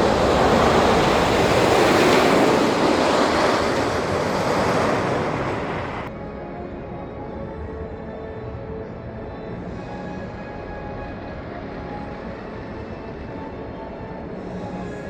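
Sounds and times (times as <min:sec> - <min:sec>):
roller coaster train rumbling: 0:00.0 - 0:06.1
music: 0:06.0 - 0:15.0.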